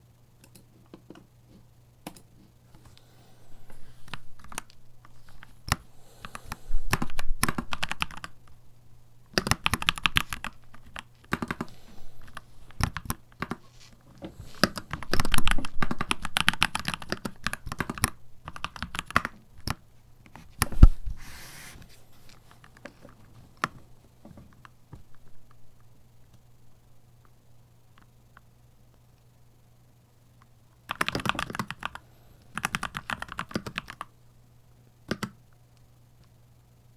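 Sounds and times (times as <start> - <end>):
mechanical keyboard typing: 0.4 - 1.3, 4.0 - 8.4, 9.3 - 13.7, 14.5 - 20.8, 30.9 - 34.1, 35.1 - 35.4.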